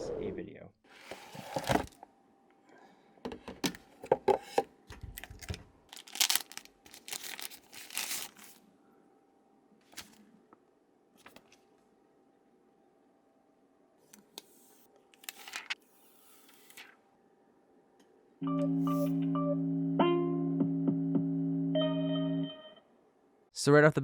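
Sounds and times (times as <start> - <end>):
packaging crinkling and tearing: 5.1 - 8.6, 15.2 - 15.8.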